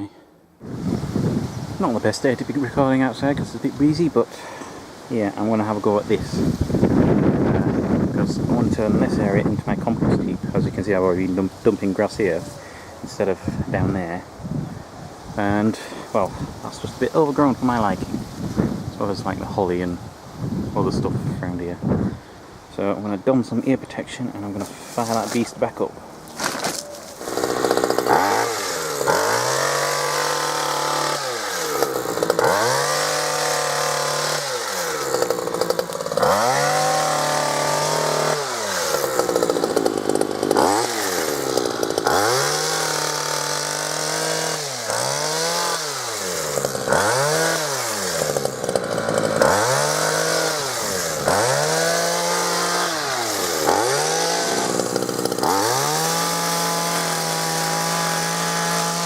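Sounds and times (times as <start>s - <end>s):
hedge trimmer engine revving: 26.3s - 59.0s.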